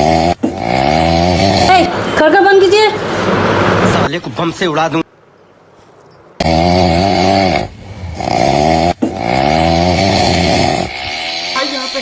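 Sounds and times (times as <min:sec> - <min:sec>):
loud rattling snoring: 0:00.0 - 0:02.2, 0:06.4 - 0:12.0.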